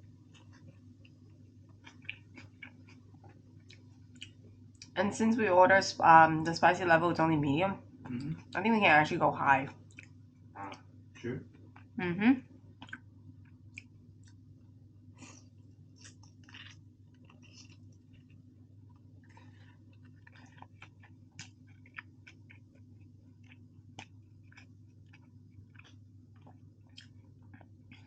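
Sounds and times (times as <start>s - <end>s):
low steady hum: 0.0s - 28.0s
chewing: 0.3s - 4.9s, 9.8s - 10.2s, 12.8s - 14.4s, 15.2s - 28.0s.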